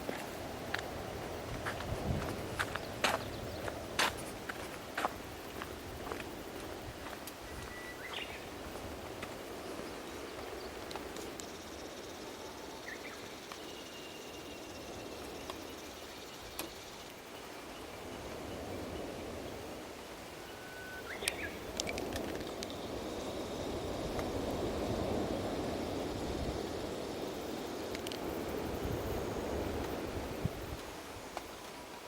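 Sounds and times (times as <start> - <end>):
outdoor background noise: 0.0 - 32.0
thin whistle: 7.5 - 8.2.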